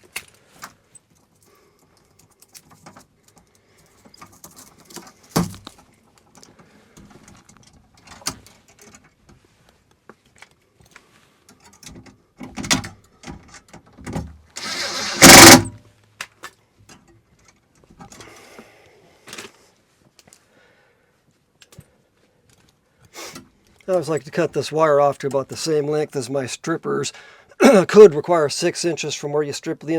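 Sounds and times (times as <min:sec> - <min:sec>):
loud burst of noise: 0:14.6 - 0:15.7.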